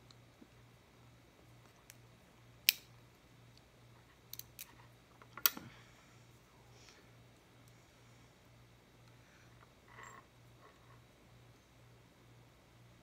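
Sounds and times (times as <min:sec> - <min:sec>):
lock picking tools clicking: 0:04.3 - 0:04.8.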